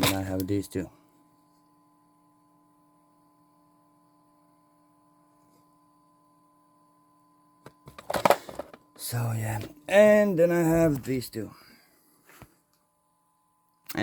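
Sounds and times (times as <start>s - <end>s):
faint electrical hum: 0.0s - 14.0s
small parts rustling clatter: 7.8s - 8.8s.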